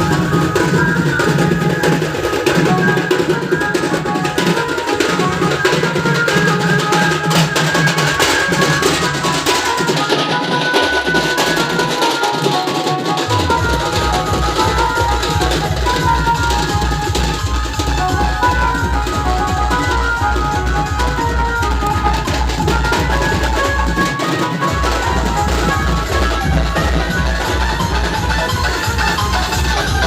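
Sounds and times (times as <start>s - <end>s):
drum-heavy dance music: 8.1s - 30.0s
heavy bass beat: 13.3s - 18.2s.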